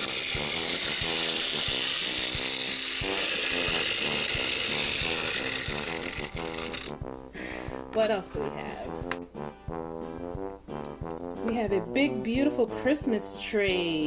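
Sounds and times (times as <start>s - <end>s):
wind-up toy train whirring: 0.0s - 7.0s
music: 0.0s - 14.0s.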